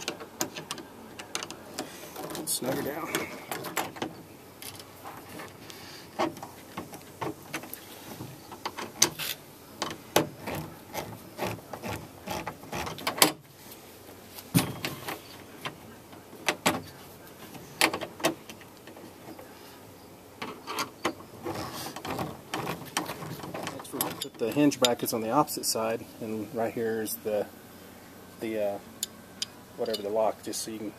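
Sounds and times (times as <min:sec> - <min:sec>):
clicks and knocks of metal hardware: 0:00.0 - 0:05.5, 0:14.6 - 0:19.1, 0:20.4 - 0:25.2, 0:29.0 - 0:30.2.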